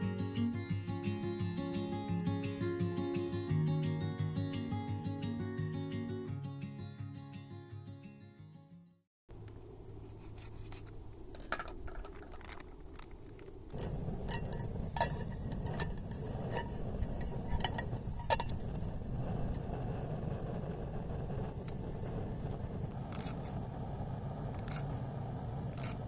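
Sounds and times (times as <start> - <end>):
steady low rumble: 13.6 - 26.0.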